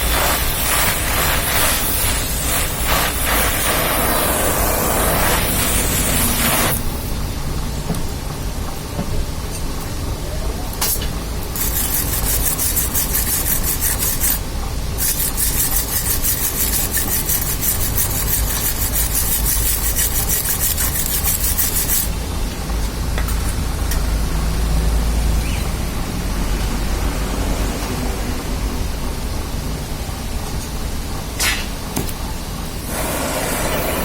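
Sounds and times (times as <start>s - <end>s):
scraping strokes on metal: 10.8s - 22.2s.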